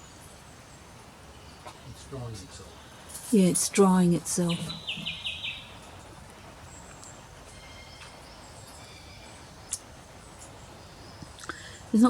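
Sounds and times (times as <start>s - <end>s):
high bird chirps: 4.4s - 5.9s.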